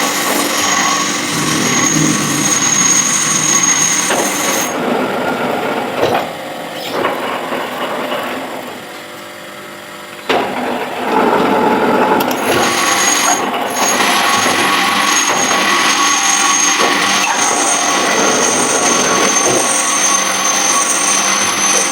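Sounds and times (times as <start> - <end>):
lathe cutting grind: 0.0 - 5.2, 12.3 - 21.9
high machine whine: 0.0 - 5.8, 12.3 - 21.9.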